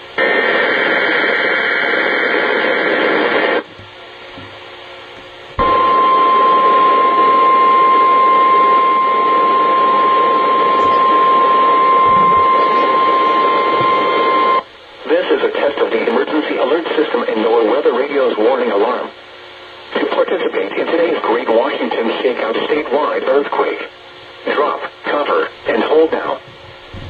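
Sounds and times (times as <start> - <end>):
radio static: 0.1 - 19.2, 19.8 - 26.5
steady alarm tone: 5.6 - 14.7.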